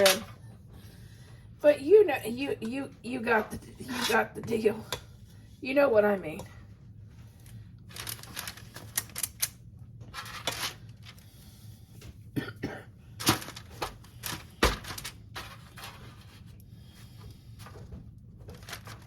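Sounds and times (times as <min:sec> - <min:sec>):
candy clicks and rustles: 0:07.4 - 0:11.2, 0:13.2 - 0:16.2, 0:18.4 - 0:19.0.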